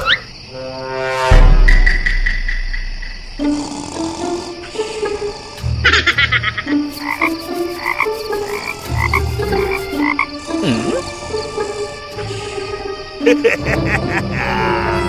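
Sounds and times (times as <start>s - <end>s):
croaking animal calls: 0.0s - 0.4s, 3.4s - 12.6s, 13.2s - 15.0s.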